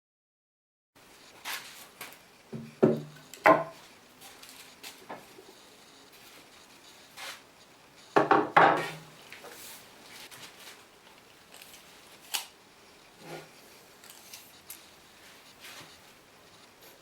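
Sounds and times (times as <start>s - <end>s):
wooden knocks and clatters: 2.6s - 3.8s, 8.2s - 9.0s.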